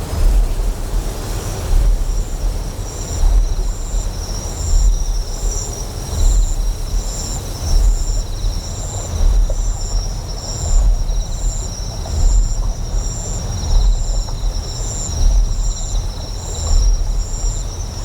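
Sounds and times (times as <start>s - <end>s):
deep pulsing generator hum: 0.0s - 18.0s
insects chirping: 0.0s - 18.0s.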